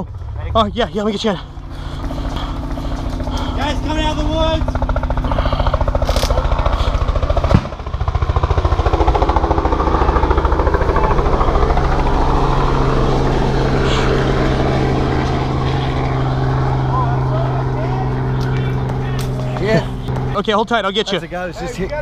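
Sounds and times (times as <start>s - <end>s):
engine running: 0.0s - 22.0s
sharp loud crack: 7.4s - 7.8s.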